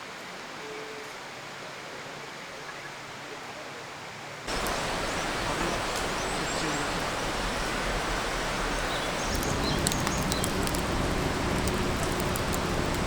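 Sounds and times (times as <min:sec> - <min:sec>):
shallow river babbling: 0:04.4 - 0:13.0
bird chirps: 0:04.5 - 0:07.8, 0:08.5 - 0:13.0
low rumble: 0:07.0 - 0:13.0.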